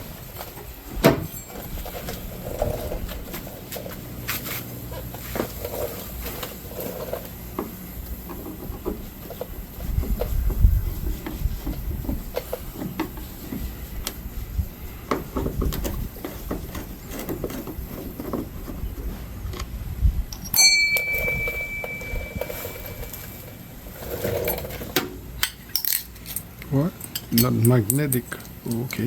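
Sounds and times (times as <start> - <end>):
handling knocks and rustles: 0.0 - 14.3, 20.4 - 29.0
metal tool clinking and ringing: 1.1 - 2.0, 20.4 - 23.6.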